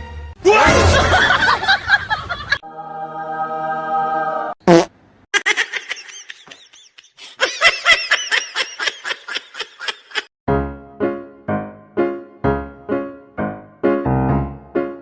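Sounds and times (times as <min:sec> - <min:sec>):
high-pitched giggling laughter: 0:05.4 - 0:10.3
piano tune: 0:10.5 - 0:15.0.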